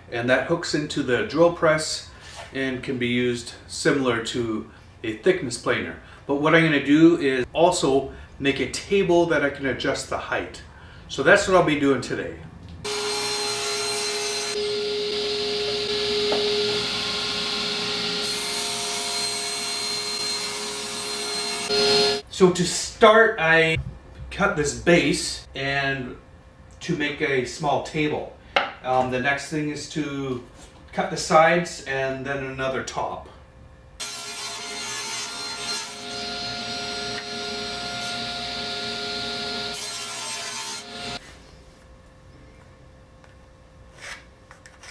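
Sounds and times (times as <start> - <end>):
power saw motor whine: 12.8 - 22.2, 34.0 - 41.2
saw cutting wooden board: 12.9 - 22.2, 34.0 - 41.2.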